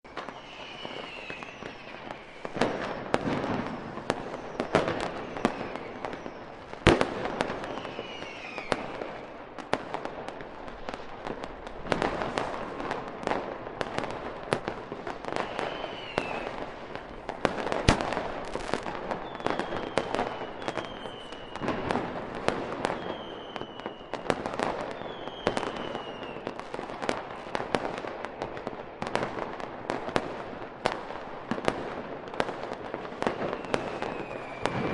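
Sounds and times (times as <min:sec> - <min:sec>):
falling firework whistles: 0:00.1 - 0:09.4, 0:11.9 - 0:14.0, 0:15.0 - 0:29.3, 0:32.9 - 0:34.9
firework bangs: 0:00.1 - 0:34.9.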